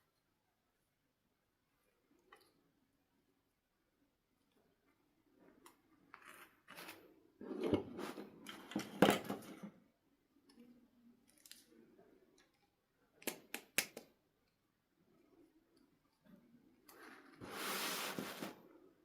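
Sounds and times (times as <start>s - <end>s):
plastic packaging rustling: 17.4s - 18.6s.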